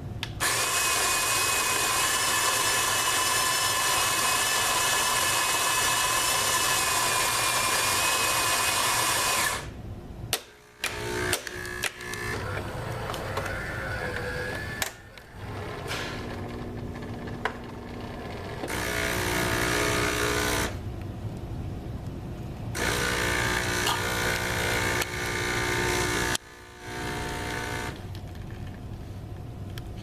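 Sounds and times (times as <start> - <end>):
espresso machine humming: 0.4 - 9.7, 10.7 - 20.8, 22.8 - 28.0
harsh louder machine noise: 0.4 - 9.7, 10.8 - 20.8, 22.8 - 28.0.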